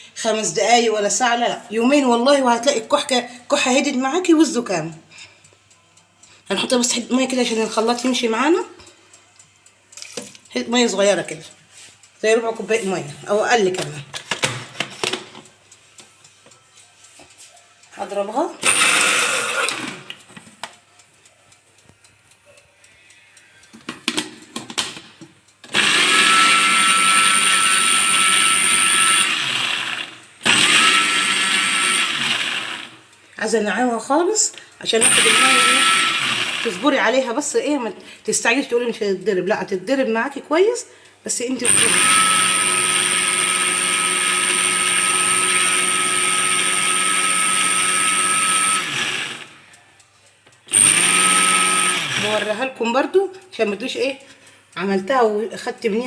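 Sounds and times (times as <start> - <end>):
blender motor whining: 18.6 - 20.1, 25.7 - 33.0, 35.0 - 36.8, 41.6 - 49.6, 50.7 - 52.6
clicks and knocks: 23.7 - 25.4.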